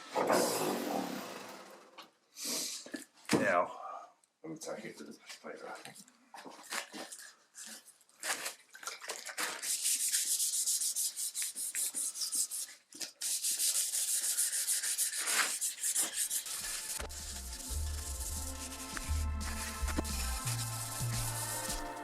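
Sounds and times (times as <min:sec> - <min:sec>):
abrasive sanding strokes: 0:09.6 - 0:22.0
music: 0:16.2 - 0:22.0.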